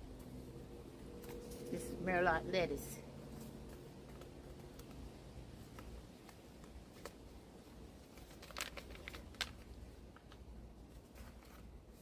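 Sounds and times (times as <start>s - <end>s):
low steady rumble: 0.0s - 12.0s
rustling of seed packet: 0.1s - 2.0s, 2.8s - 12.0s
crackles: 3.3s - 12.0s.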